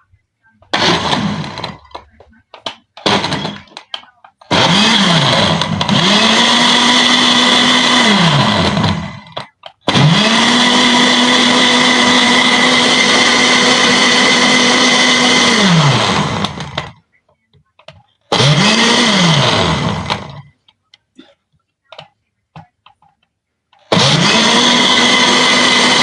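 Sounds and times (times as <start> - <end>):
blender motor whining: 0.7 - 17.0, 18.3 - 20.5, 23.8 - 26.0.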